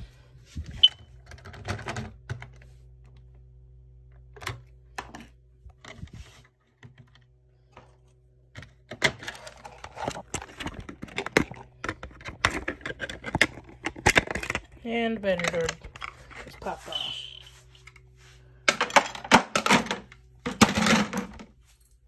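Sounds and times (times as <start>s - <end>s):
hard plastic clicking and rattling: 8.6s - 16.2s.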